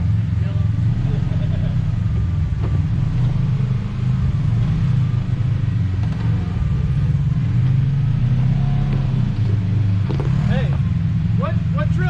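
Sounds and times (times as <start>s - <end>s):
engine rumbling at low revs: 0.0s - 12.0s.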